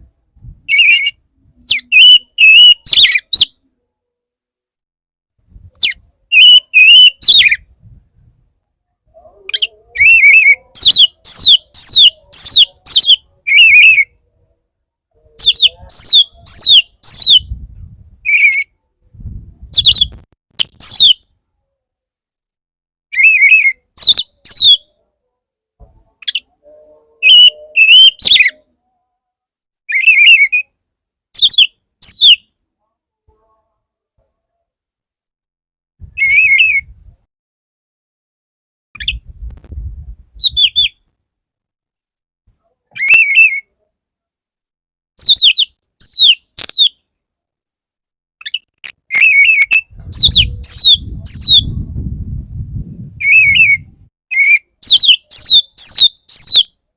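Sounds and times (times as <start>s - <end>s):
bird singing whistled phrases: 0.7s - 3.6s, 5.8s - 7.6s, 9.5s - 14.1s, 15.4s - 17.4s, 20.7s - 21.2s, 23.2s - 24.8s, 26.3s - 28.6s, 29.9s - 30.6s, 36.2s - 36.8s, 43.0s - 43.6s, 45.2s - 46.9s, 48.5s - 51.7s, 53.2s - 56.7s.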